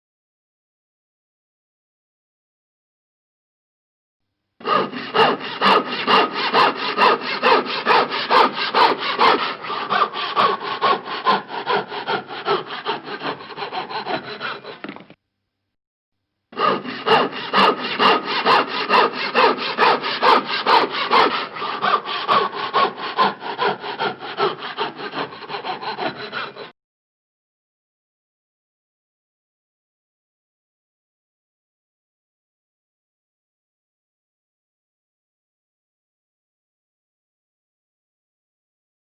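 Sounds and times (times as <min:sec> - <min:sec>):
handsaw cutting wood: 0:04.6 - 0:15.2, 0:16.6 - 0:26.8.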